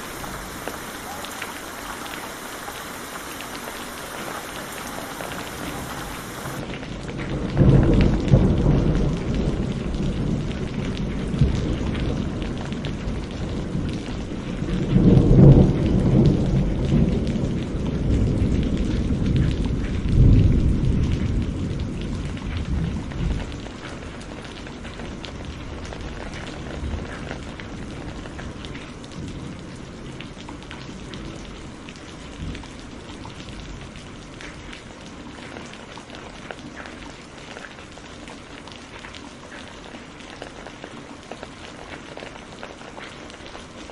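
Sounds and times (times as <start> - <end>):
thunder rolling: 0.0 - 6.6
rain hiss: 0.0 - 43.9.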